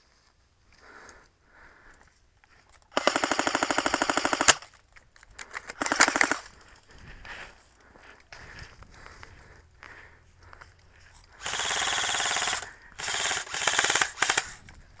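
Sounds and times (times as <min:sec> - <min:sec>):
airsoft rifle firing full-auto: 0:02.9 - 0:04.7, 0:05.8 - 0:06.5, 0:11.4 - 0:14.6.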